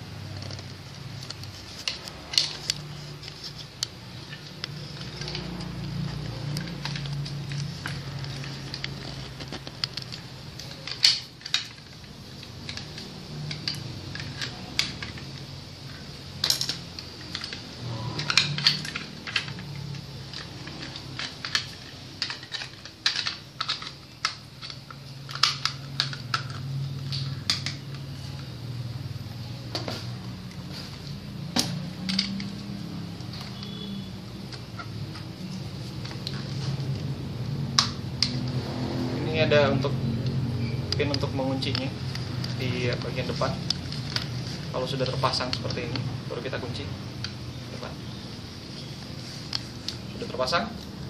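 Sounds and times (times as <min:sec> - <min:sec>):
clicks and knocks of parts fitted: 0:01.2 - 0:28.0, 0:31.5 - 0:35.3.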